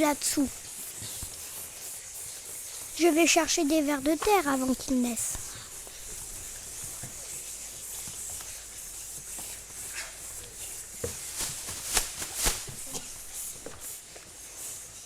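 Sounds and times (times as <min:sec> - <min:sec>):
scratchy rustling and rubbing: 0:00.0 - 0:15.0.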